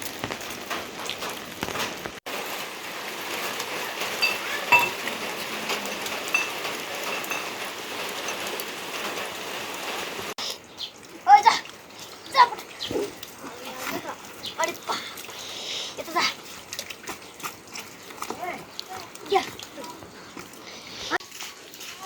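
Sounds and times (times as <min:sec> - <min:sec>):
rain pattering: 0:00.0 - 0:22.0
sharp high drips: 0:02.3 - 0:22.0.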